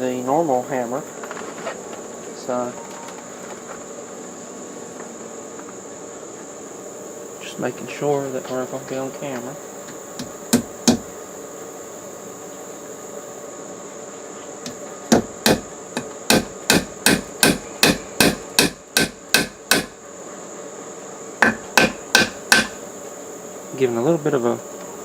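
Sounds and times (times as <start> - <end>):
hammer striking nail into wood: 10.2 - 11.1, 15.1 - 20.0, 21.4 - 22.8.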